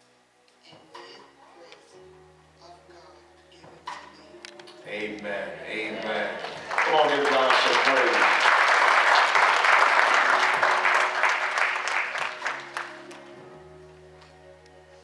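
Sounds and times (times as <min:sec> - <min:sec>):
soft instrumental chords: 0:00.0 - 0:07.2, 0:10.4 - 0:15.0
congregation applauding: 0:05.5 - 0:13.7.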